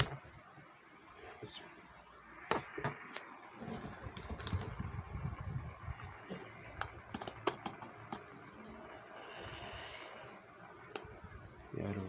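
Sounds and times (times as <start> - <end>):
handling noise: 2.4 - 5.1, 6.0 - 8.7.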